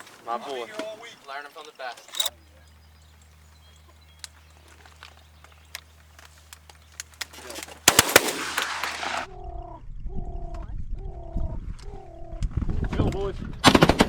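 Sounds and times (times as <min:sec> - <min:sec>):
shotgun blasts: 0:07.8 - 0:09.3.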